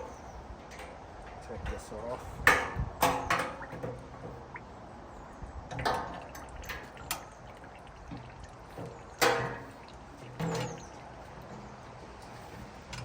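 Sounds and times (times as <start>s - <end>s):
fuel sloshing in can: 5.6s - 12.9s.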